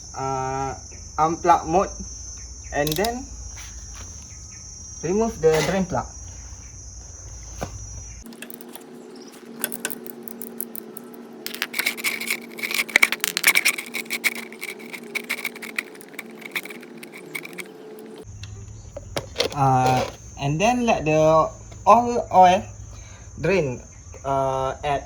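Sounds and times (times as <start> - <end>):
steady hum: 0.0 - 24.1
crickets chirping: 0.0 - 25.0
ratchet wrench clicking: 2.8 - 3.2, 9.6 - 17.7.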